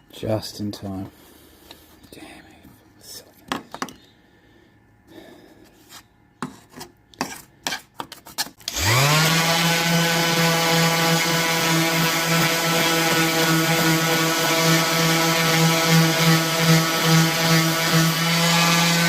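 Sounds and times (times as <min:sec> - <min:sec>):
electric power tool spinning: 0:08.6 - 0:19.0.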